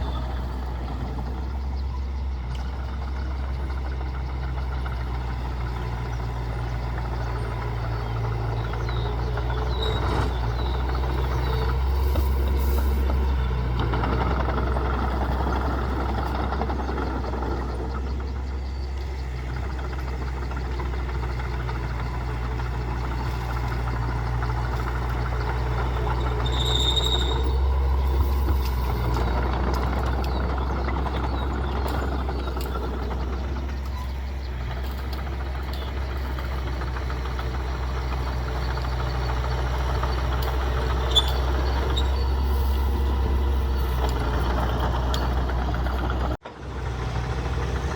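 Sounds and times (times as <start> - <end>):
heavy diesel machinery running: 0.0 - 47.9
high squeal: 9.5 - 13.1, 25.8 - 29.4, 40.9 - 44.2.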